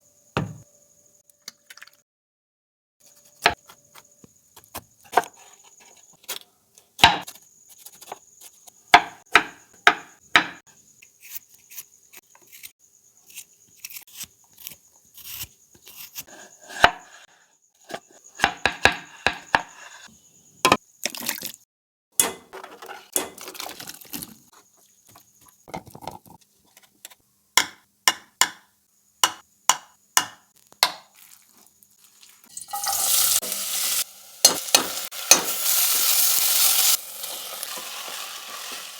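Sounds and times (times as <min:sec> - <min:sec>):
knife chopping on wooden board: 0:00.4 - 0:00.6, 0:07.0 - 0:07.4, 0:09.0 - 0:10.6, 0:13.9 - 0:17.2, 0:17.9 - 0:20.0, 0:27.6 - 0:31.1.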